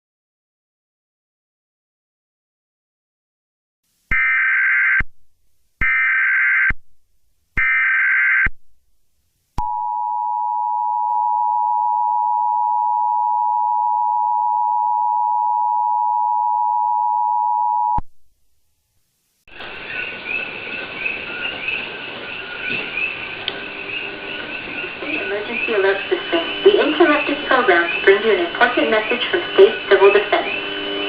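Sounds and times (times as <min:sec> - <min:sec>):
data burst tones: 0:19.5 - 0:31.0
two-tone attention signal: 0:23.7 - 0:31.0.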